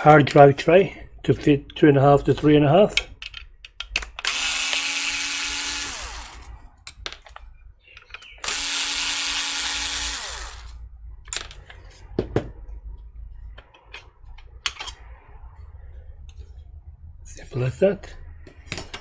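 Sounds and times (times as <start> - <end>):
clicks of screws and metal: 2.4 - 5.0, 6.9 - 8.8, 13.6 - 15.0
electric screwdriver whirring: 4.2 - 6.5, 8.4 - 10.8.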